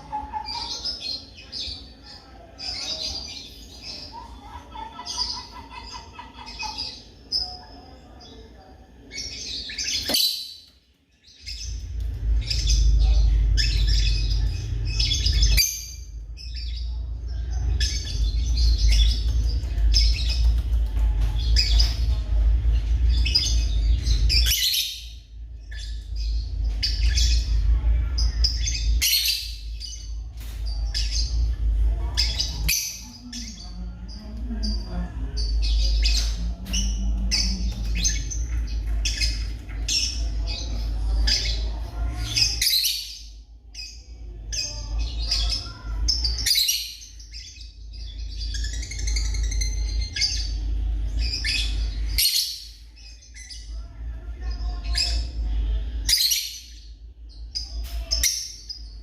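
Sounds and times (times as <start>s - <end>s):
lovebirds chirping and squawking: 0.0s - 59.0s
steady low rumble: 11.1s - 57.8s.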